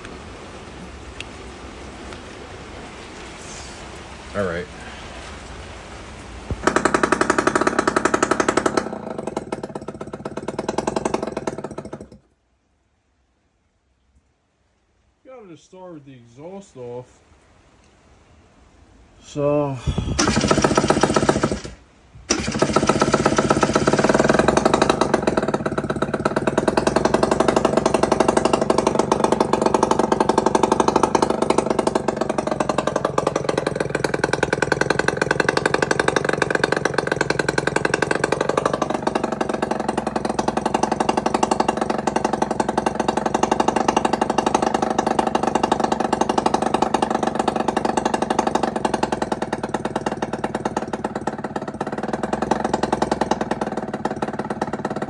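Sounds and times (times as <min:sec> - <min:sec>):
loud two-stroke engine running: 0:06.5 - 0:12.2, 0:20.0 - 0:55.0.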